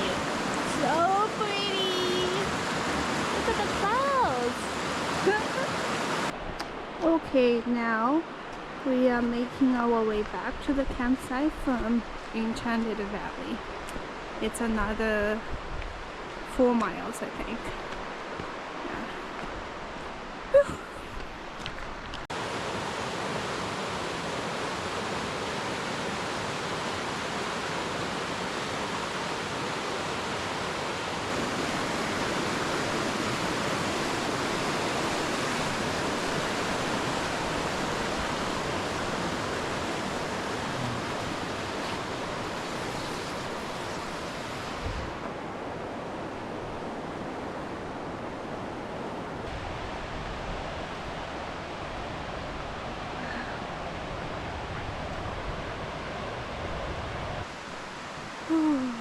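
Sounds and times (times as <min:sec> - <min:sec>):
fast-flowing water rushing: 0:00.0 - 0:07.5, 0:21.4 - 0:59.0.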